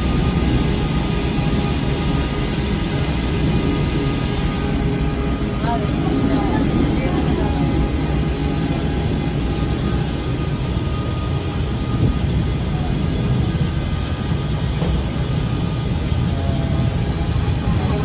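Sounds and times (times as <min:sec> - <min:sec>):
funicular car rumbling on rails: 0:02.7 - 0:10.5, 0:11.4 - 0:18.0.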